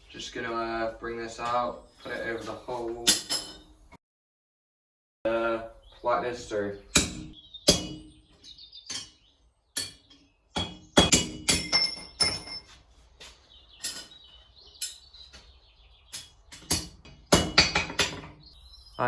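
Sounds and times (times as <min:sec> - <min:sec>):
hammer striking hot steel on anvil: 0:06.9 - 0:08.1, 0:09.8 - 0:12.6, 0:16.6 - 0:18.2.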